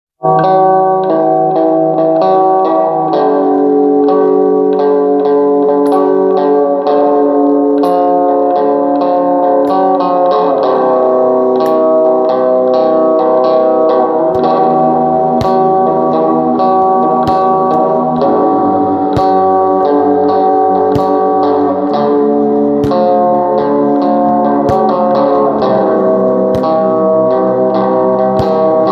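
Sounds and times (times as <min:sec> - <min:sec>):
plucked guitar melody: 0:00.2 - 0:28.9
bass line: 0:13.0 - 0:28.9.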